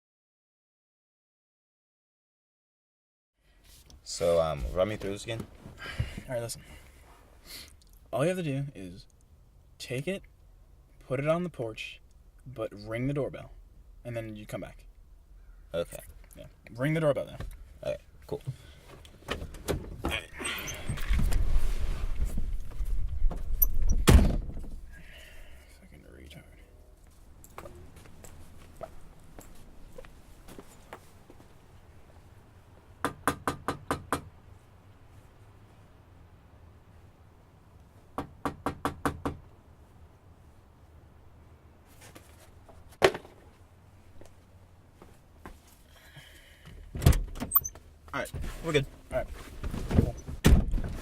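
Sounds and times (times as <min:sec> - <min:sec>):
rustling and shuffling: 0:03.5 - 0:07.4, 0:17.3 - 0:24.9, 0:26.2 - 0:32.9, 0:34.4 - 0:38.1, 0:41.7 - 0:46.0, 0:47.7 - 0:51.0
loud thump: 0:23.2 - 0:24.8, 0:50.0 - 0:51.0
loud knock or thump: 0:24.0 - 0:24.8.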